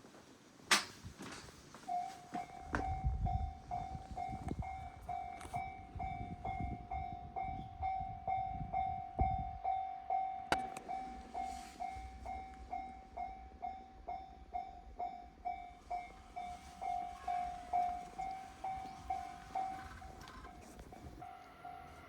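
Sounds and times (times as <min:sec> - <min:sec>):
level crossing bell dinging: 0:15.5 - 0:22.0.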